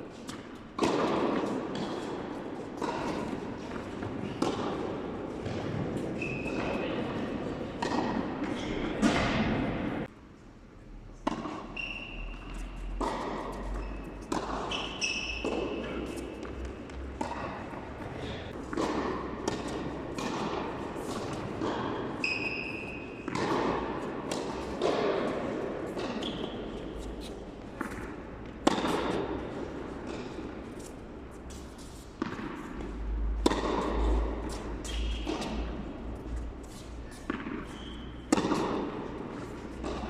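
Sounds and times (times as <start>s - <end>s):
tennis racket strokes: 0.0s - 10.1s, 11.2s - 40.0s
tennis ball bounces: 0.2s - 10.1s, 11.2s - 40.0s
shoe squeaks: 6.1s - 7.0s, 11.6s - 16.6s, 22.2s - 23.3s, 26.2s - 27.4s, 36.7s - 38.3s.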